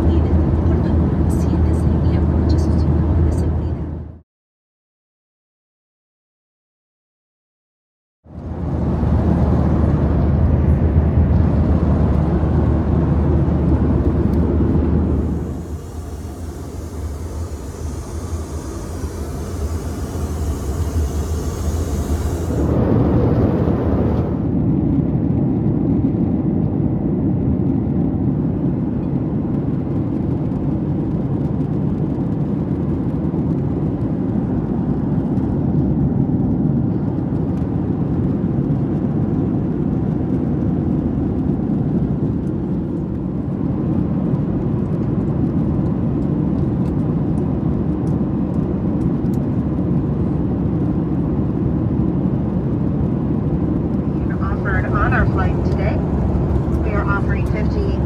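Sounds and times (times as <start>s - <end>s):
airplane cabin engine rush: 0.0s - 4.2s, 8.3s - 58.0s
deep steady rumble: 0.0s - 4.2s, 8.3s - 25.2s, 48.7s - 58.0s.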